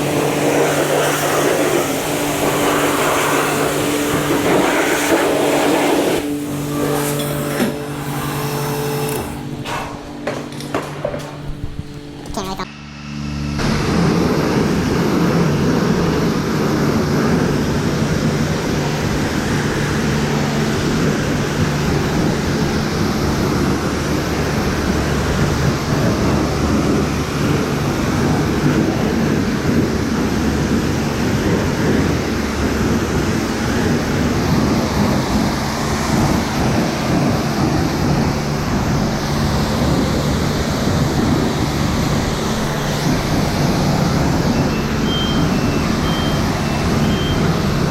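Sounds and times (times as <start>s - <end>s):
pressure washer spraying: 0.0s - 12.4s
pump humming: 0.0s - 12.7s.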